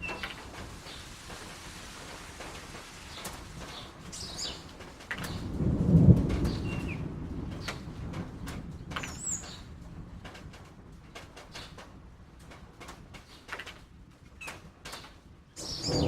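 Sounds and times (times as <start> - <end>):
thunder rumbling: 0.0 - 11.1, 15.6 - 16.0
rain: 0.0 - 16.0.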